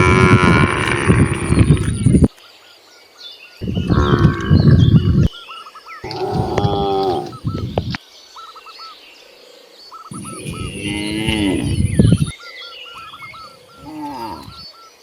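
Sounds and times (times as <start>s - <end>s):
cows mooing: 0.0s - 2.1s, 3.6s - 5.3s, 6.0s - 8.0s, 10.1s - 12.3s, 13.8s - 14.6s.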